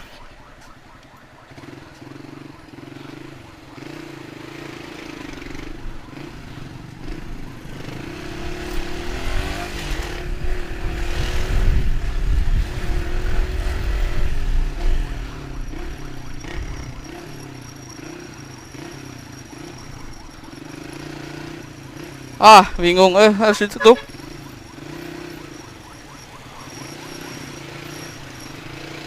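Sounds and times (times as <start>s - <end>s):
motorcycle engine running: 1.3s - 29.0s.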